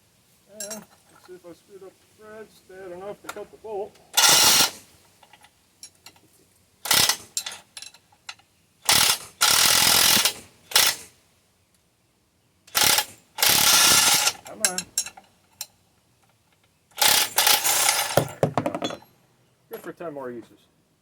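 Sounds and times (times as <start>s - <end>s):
ratchet wrench clicking: 6.9s - 7.9s, 8.9s - 11.0s, 12.7s - 15.1s, 17.0s - 18.2s.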